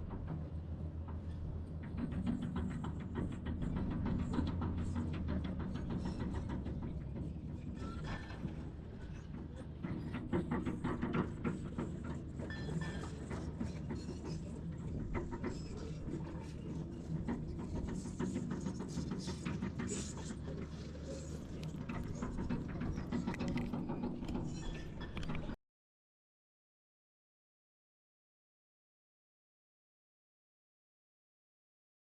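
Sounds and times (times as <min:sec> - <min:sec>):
diesel machinery running: 0:00.0 - 0:25.6
metallic clanks and rattles: 0:01.8 - 0:25.6.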